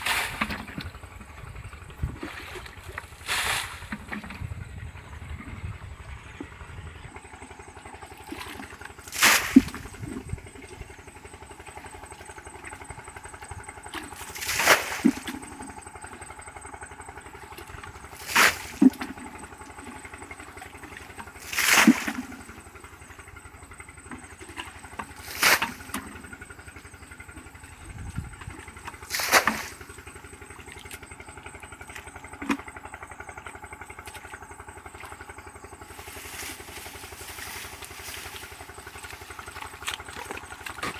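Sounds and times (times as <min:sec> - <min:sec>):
small engine running: 0:00.0 - 0:40.9.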